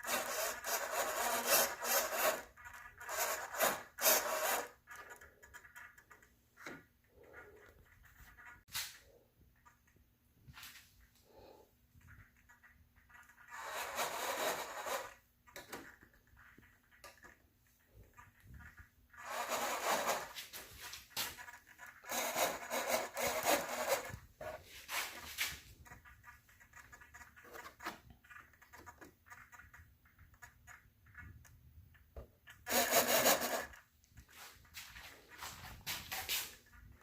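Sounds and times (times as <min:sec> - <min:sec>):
hand tool rasping on wood: 0:00.0 - 0:04.9, 0:19.2 - 0:20.6, 0:21.2 - 0:24.6.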